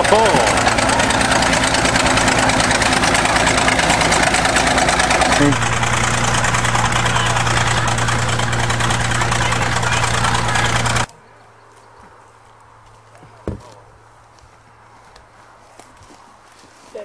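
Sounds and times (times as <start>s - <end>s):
diesel engine running: 0.0s - 11.1s.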